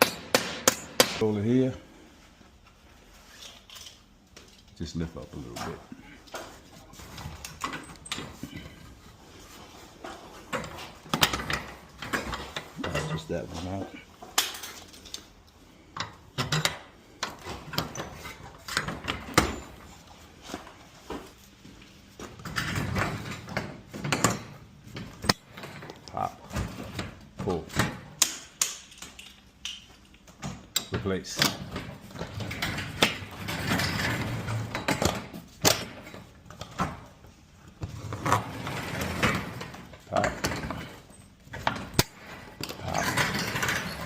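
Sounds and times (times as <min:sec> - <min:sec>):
metal garage door hardware clatter: 0:05.4 - 0:08.9, 0:22.4 - 0:37.3, 0:38.0 - 0:44.0
metal rollers clinking: 0:10.0 - 0:15.4, 0:38.0 - 0:44.0
scraping and rattling: 0:37.8 - 0:44.0.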